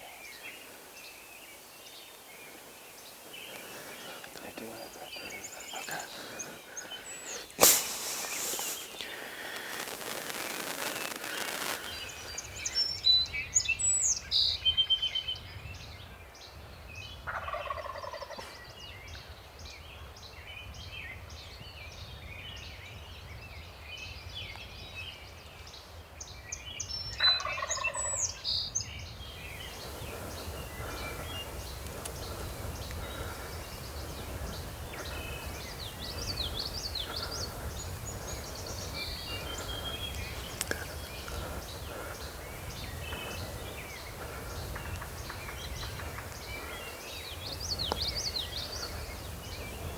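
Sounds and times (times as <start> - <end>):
songbirds chirping: 0.0 - 49.9
turkey gobbling: 17.4 - 18.4.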